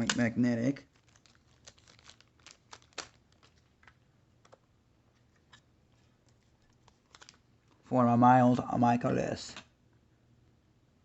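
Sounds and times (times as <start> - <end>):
light rustling of card: 0.8 - 7.9.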